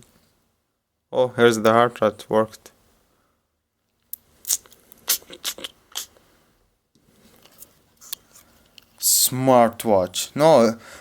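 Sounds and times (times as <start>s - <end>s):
soft rustling: 6.2s - 9.1s
small parts clicking and scraping: 7.2s - 9.0s.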